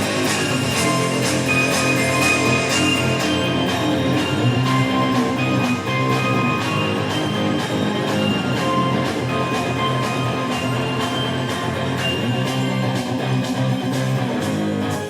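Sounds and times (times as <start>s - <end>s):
electronic rock band playing live: 0.0s - 15.0s.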